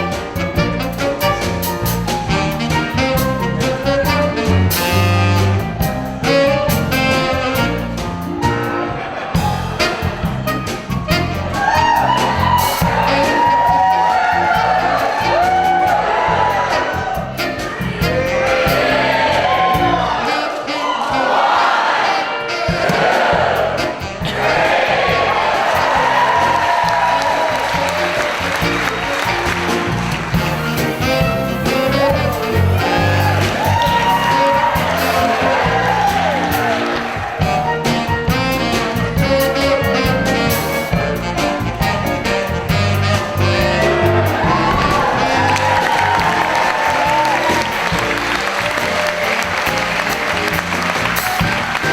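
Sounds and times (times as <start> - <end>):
live band playing upbeat music: 0.0 - 20.7, 22.1 - 51.9
audience whooping: 4.8 - 51.9
sliding long notes: 22.6 - 51.9.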